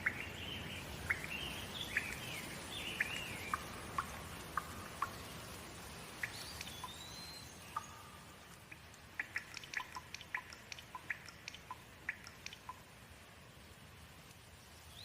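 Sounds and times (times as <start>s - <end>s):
rain: 0.0s - 15.0s
water drops dripping: 1.0s - 13.2s
whistled bird call: 6.2s - 8.0s.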